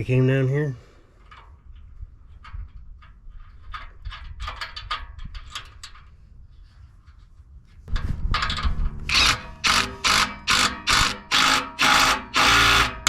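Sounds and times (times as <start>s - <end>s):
rasping tool noise: 9.1s - 13.0s.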